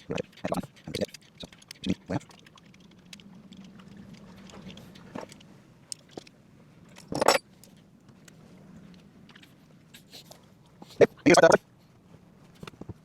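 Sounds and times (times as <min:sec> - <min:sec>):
light clicks of metal parts: 0:00.0 - 0:11.2, 0:11.8 - 0:13.0
metal parts rattling: 0:07.0 - 0:07.4.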